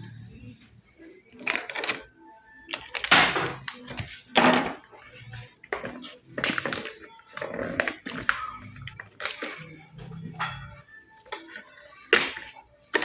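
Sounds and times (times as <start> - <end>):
background music: 0.0 - 13.0
goods set down on shelves: 2.9 - 4.9.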